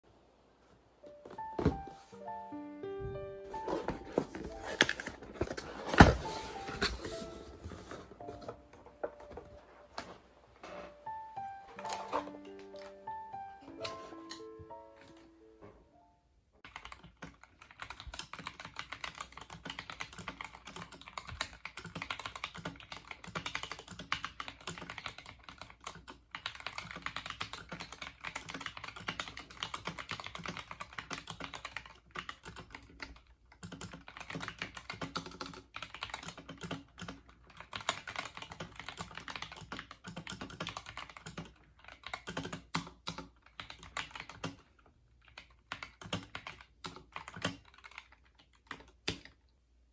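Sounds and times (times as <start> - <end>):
fast mechanical keyboard typing: 16.6 - 49.4.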